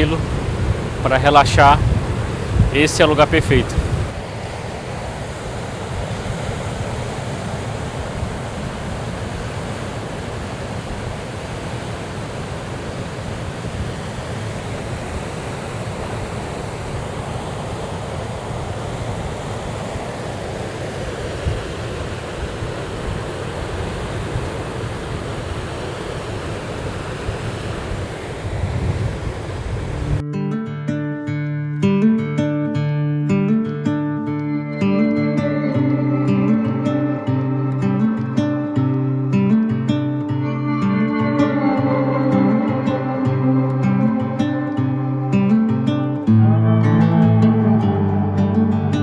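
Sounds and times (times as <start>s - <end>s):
acoustic guitar music: 0.0s - 4.2s, 30.2s - 49.0s
sea surf breaking on beach: 0.0s - 30.2s
wind rushing over microphone: 0.0s - 30.2s.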